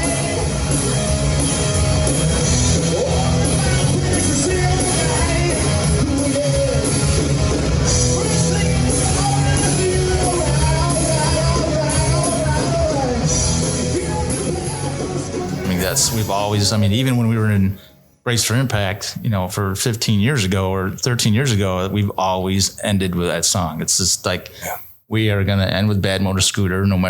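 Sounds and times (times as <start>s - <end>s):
hard rock music with singing: 0.0s - 16.4s.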